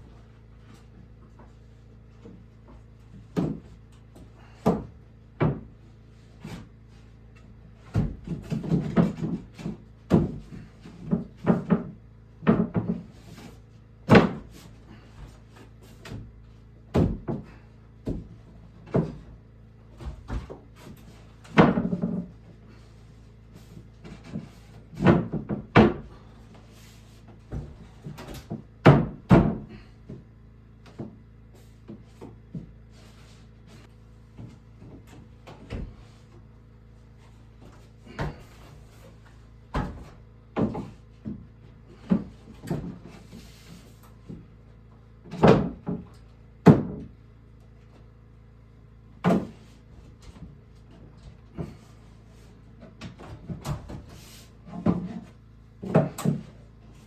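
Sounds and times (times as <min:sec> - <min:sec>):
wooden boards knocking: 0:07.9 - 0:13.1, 0:21.4 - 0:22.3, 0:24.0 - 0:26.1, 0:27.5 - 0:29.8, 0:45.3 - 0:47.1.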